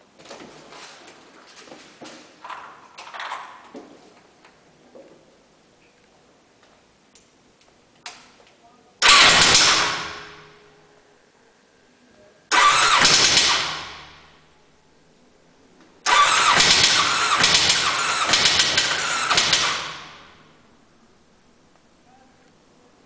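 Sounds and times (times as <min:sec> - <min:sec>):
car engine cranking by starter: 0:09.0 - 0:10.6, 0:12.5 - 0:14.5, 0:16.0 - 0:20.7.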